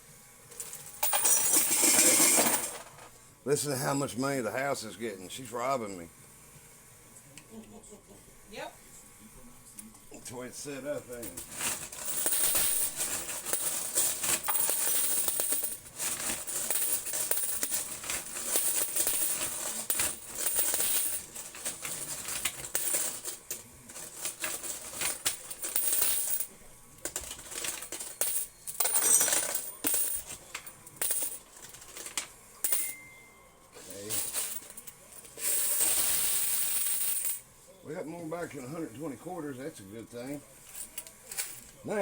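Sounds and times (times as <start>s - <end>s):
coins clinking in coin pusher: 0.5s - 3.1s, 11.2s - 33.2s, 33.8s - 37.4s.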